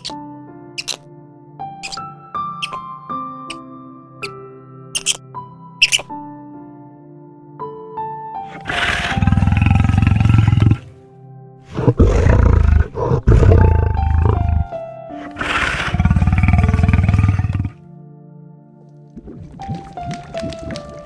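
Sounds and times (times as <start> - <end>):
background music: 0.0 - 21.0
low rasping animal roars: 8.5 - 10.9, 11.7 - 17.8.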